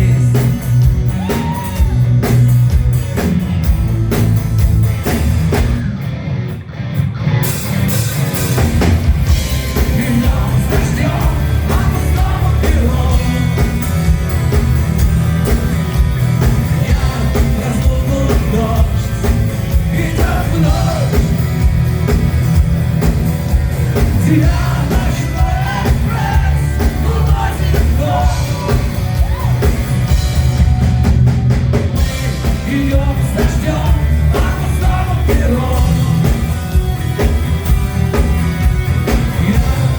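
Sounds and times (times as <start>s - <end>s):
man singing: 0.0s - 1.6s, 9.6s - 14.1s, 16.6s - 21.4s, 24.0s - 29.0s, 32.4s - 36.5s, 39.3s - 39.9s
live rock band playing: 0.0s - 39.9s.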